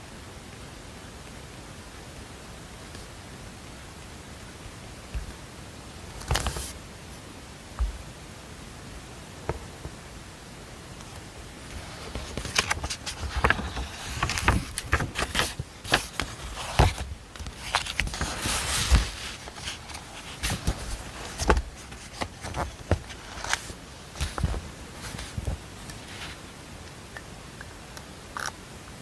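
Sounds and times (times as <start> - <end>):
rustling: 6.1 - 8.0, 11.1 - 26.5.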